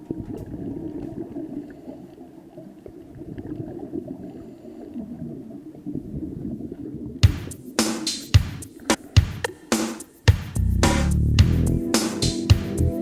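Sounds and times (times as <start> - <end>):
muffled water gurgling: 0.0 - 7.2.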